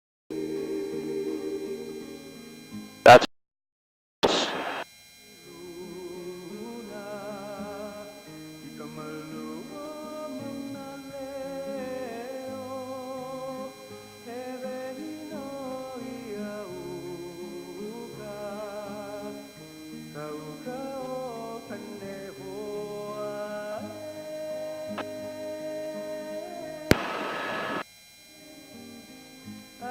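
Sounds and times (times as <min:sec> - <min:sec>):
man singing: 0:05.4 - 0:19.5, 0:20.1 - 0:27.4
acoustic guitar: 0:05.7 - 0:27.8.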